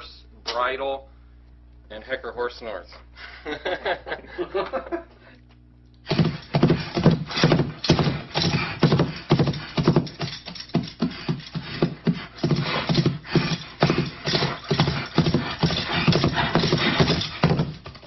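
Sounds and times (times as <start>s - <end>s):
bridle jingling: 6.1s - 18.0s
horse hoofbeats clip-clop: 6.1s - 18.0s.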